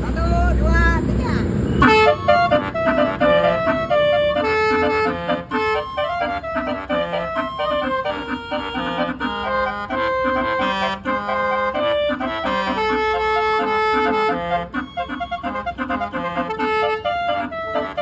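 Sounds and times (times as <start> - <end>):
musical air horn tune: 1.7 - 18.0.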